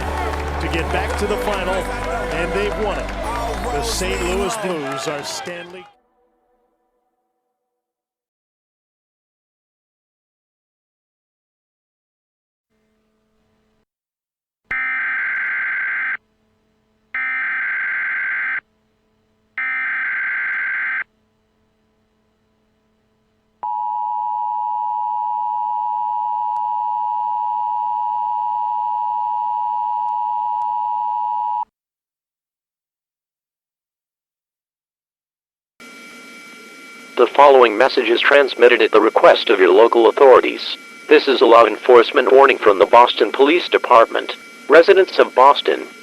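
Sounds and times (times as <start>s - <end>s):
two-tone attention signal: 23.6s - 31.6s.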